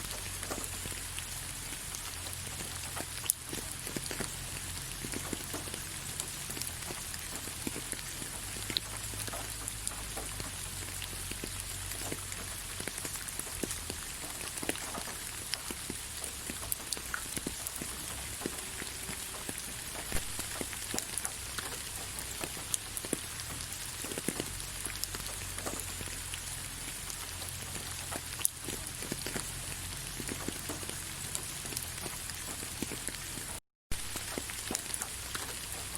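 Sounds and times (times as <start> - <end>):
rain falling on leaves: 0.0 - 35.9.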